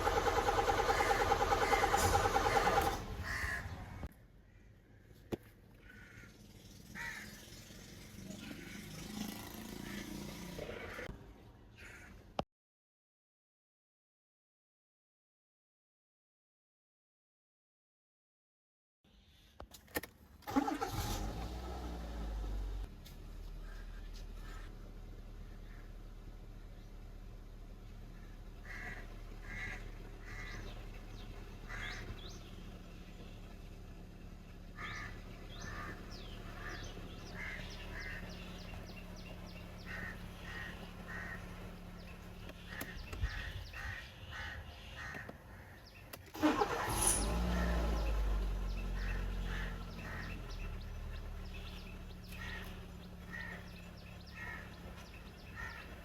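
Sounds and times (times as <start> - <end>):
car engine cranking and idling: 0.0 - 11.2, 19.7 - 56.0
birds chirping: 23.4 - 56.0.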